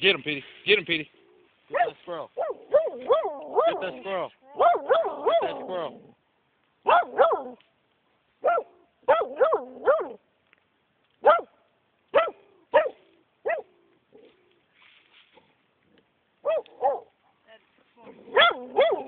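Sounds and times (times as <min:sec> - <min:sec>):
dog barking: 0:01.7 - 0:05.7, 0:06.8 - 0:07.6, 0:08.4 - 0:10.2, 0:11.2 - 0:14.3, 0:16.4 - 0:17.2, 0:18.2 - 0:19.0.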